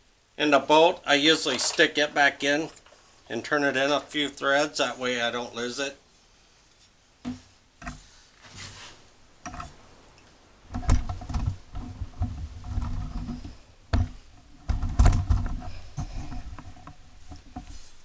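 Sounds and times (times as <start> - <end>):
handling clicks and knocks: 1.0 - 4.5, 9.4 - 18.0.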